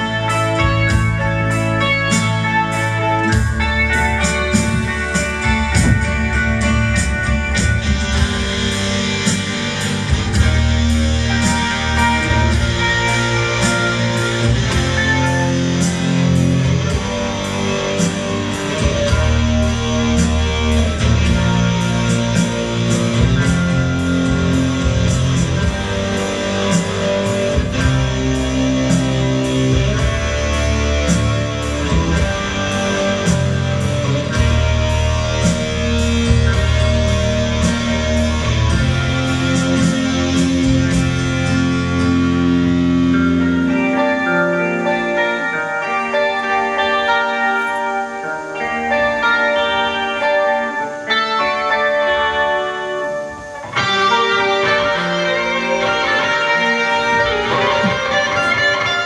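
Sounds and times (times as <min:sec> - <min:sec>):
sustained bass notes: 0:00.0 - 0:51.1
instrumental guitar music: 0:00.0 - 0:59.0
light steady beat: 0:02.1 - 0:32.6.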